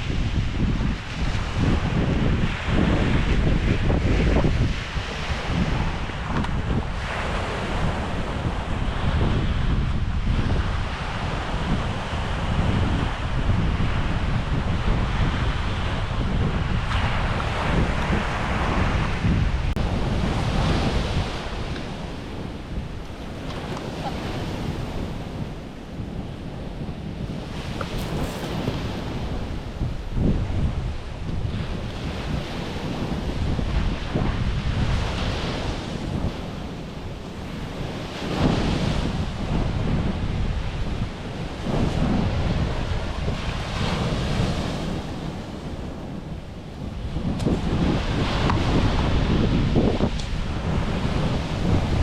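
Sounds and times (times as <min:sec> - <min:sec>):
strong wind buffeting microphone: 0:00.0 - 0:52.0.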